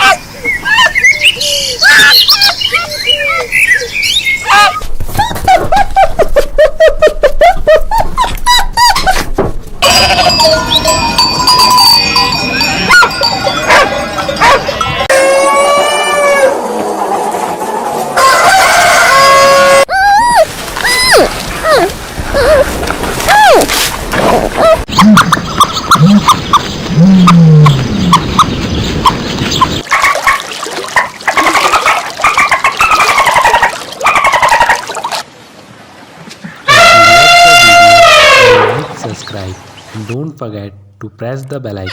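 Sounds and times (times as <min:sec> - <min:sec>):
bird calling: 0:00.0 - 0:05.8, 0:24.2 - 0:29.9.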